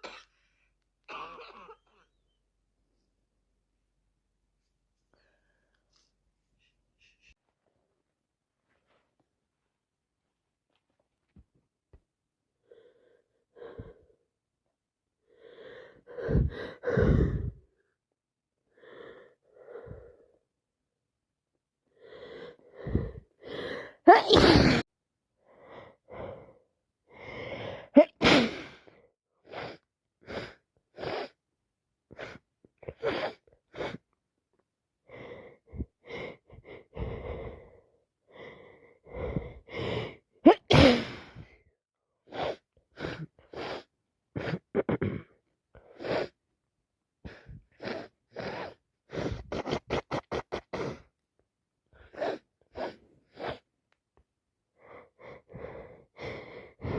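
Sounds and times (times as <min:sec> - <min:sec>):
gasping breaths: 0:15.3 - 0:17.9, 0:21.9 - 0:24.8, 0:35.1 - 0:40.3, 0:54.8 - 0:56.9
woman sneezing: 0:24.1 - 0:24.8, 0:28.0 - 0:28.7, 0:40.4 - 0:41.4
sniffs: 0:43.5 - 0:43.9, 0:52.0 - 0:53.7.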